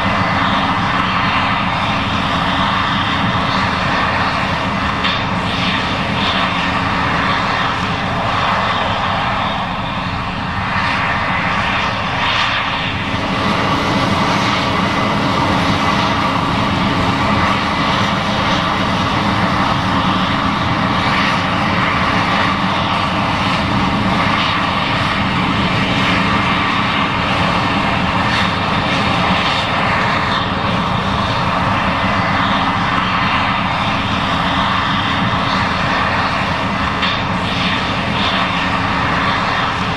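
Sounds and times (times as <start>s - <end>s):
combine harvester droning: 0.0s - 39.9s.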